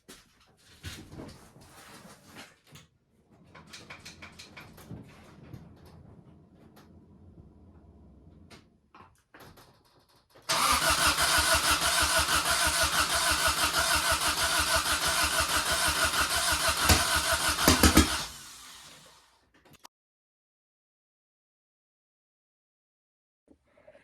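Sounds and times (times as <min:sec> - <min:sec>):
starter cranking engine: 0:10.5 - 0:19.2
engine pops: 0:13.0 - 0:18.5.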